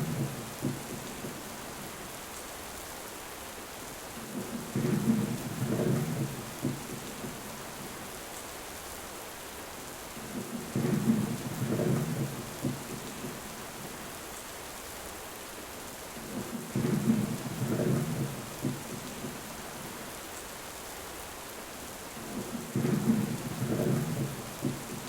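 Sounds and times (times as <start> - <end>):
steady rain falling: 0.0 - 25.0
low rolling thunder: 10.5 - 13.4, 22.2 - 25.0.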